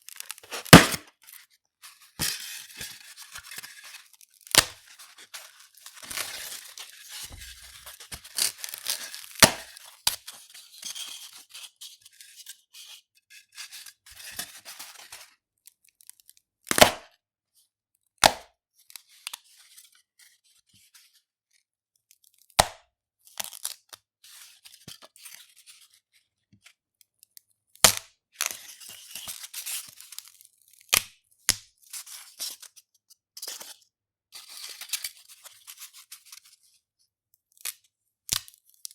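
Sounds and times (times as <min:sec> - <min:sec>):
styrofoam squeaky crackling: 0:00.1 - 0:01.0
styrofoam snapping: 0:00.2 - 0:01.0, 0:08.4 - 0:09.7.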